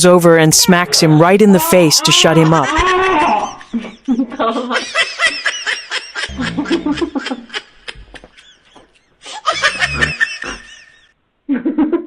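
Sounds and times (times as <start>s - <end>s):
laughter in quick bursts: 2.5s - 12.0s.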